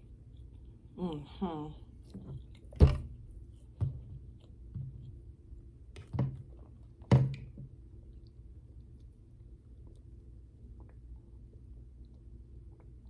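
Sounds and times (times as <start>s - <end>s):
person chewing food: 0.0s - 1.3s, 1.9s - 2.8s, 3.4s - 5.3s.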